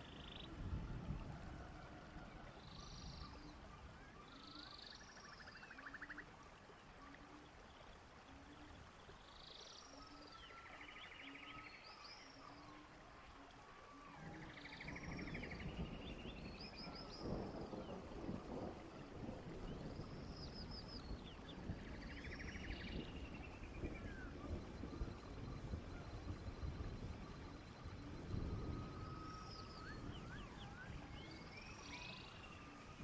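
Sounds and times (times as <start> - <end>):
soft low bird call: 0.0 - 33.0
birds chirping and trilling: 2.6 - 12.9, 29.0 - 33.0.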